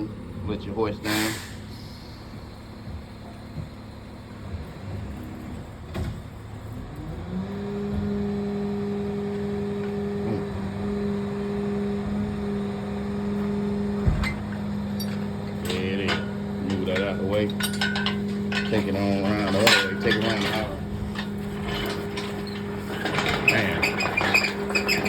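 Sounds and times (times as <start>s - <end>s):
motor humming: 7.3s - 25.0s.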